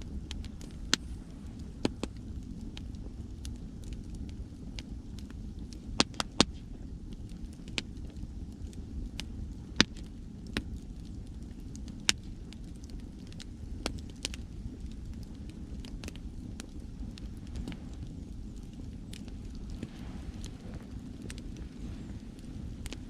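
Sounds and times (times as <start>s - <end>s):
campfire crackling and popping: 0.0s - 23.0s
low rumble of waves: 0.0s - 23.0s.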